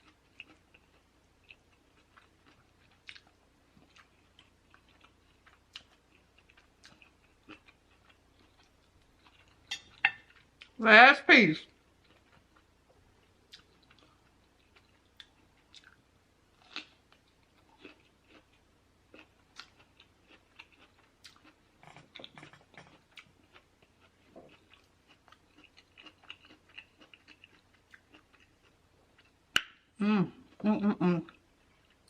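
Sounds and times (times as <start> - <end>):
close-miked chewing: 0.0 - 10.8, 11.9 - 16.0, 16.6 - 29.4.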